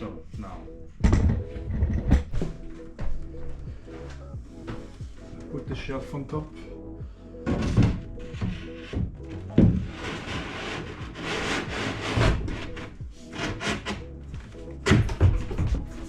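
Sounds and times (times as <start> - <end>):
background music: 0.0 - 16.0
wooden shelf knocking: 7.4 - 10.0, 14.8 - 16.0
shelf scraping into place: 7.4 - 14.0.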